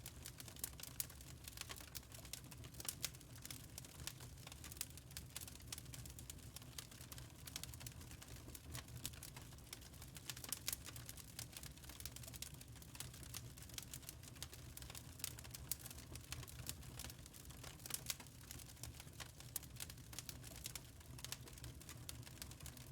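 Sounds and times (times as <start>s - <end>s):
wood fire crackling: 0.0s - 22.9s.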